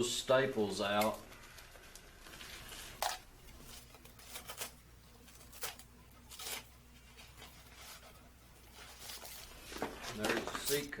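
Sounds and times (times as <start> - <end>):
fabric and foam rustling scrapes: 2.2 - 11.0.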